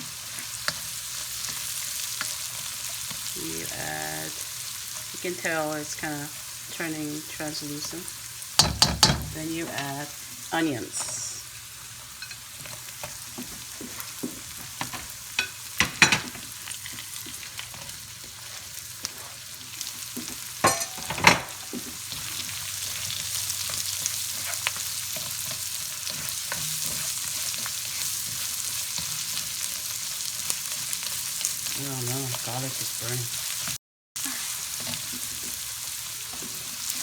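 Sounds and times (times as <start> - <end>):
vegetables sizzling in oil: 0.0 - 37.0.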